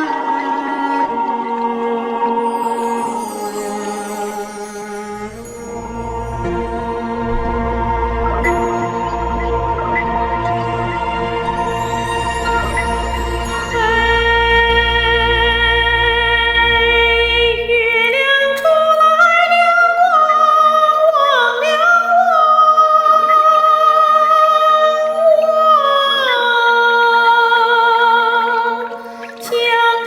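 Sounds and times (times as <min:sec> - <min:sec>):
woman singing with vibrato: 0:00.0 - 0:30.0
steady low drone: 0:04.3 - 0:17.9
low bass accompaniment: 0:05.0 - 0:17.9.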